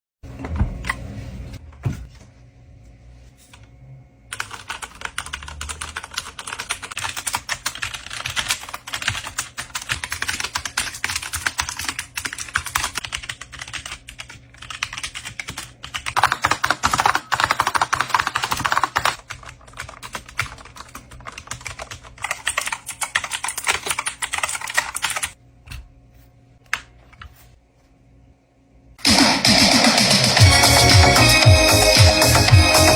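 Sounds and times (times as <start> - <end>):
keyboard typing: 4.3 - 25.4.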